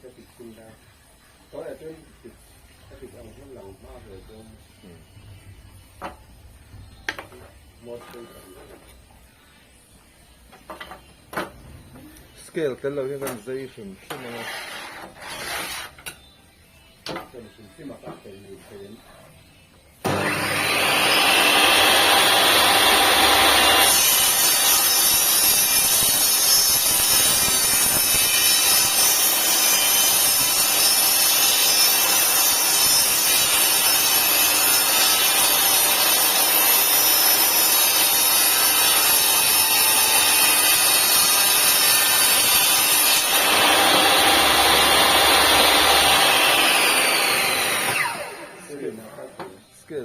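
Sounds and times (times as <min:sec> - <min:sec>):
saw cutting through wood: 0:14.1 - 0:16.0, 0:20.0 - 0:49.2
table saw whining: 0:20.0 - 0:49.6.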